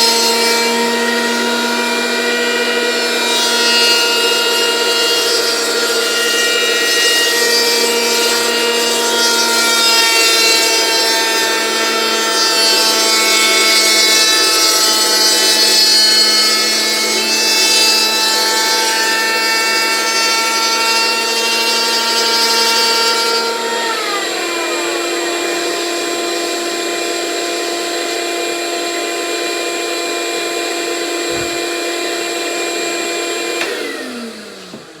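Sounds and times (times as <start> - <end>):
power tool whining: 0.0 - 35.0.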